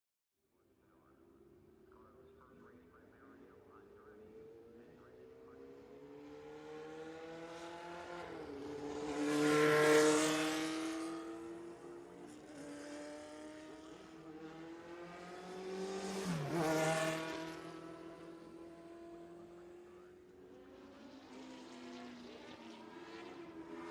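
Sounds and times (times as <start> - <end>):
racing cars passing at speed: 1.1 - 23.9.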